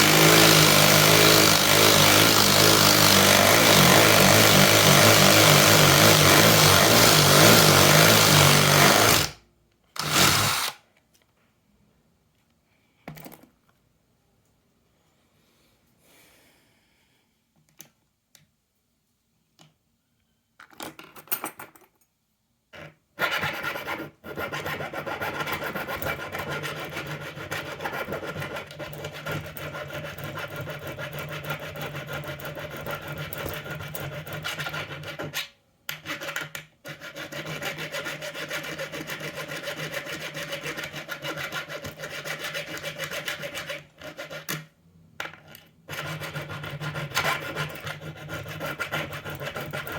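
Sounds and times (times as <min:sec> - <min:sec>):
cordless drill drilling: 0:00.0 - 0:09.4, 0:10.0 - 0:10.8.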